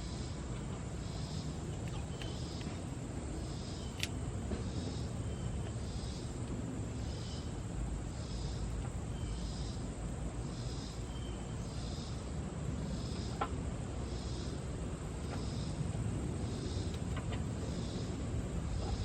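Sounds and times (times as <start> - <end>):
light click: 3.9 - 4.2.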